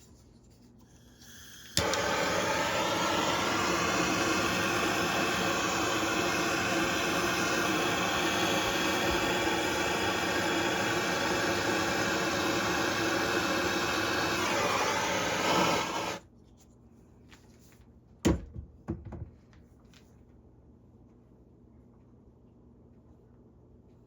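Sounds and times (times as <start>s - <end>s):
heat gun blowing: 1.1s - 16.2s.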